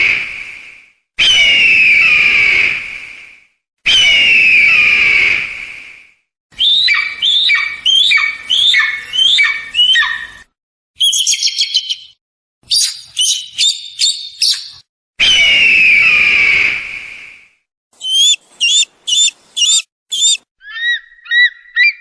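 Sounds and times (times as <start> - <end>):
eagle calls: 6.6 - 10.4, 18.0 - 22.0
high-pitched eagle chittering: 6.6 - 14.8, 18.0 - 22.0.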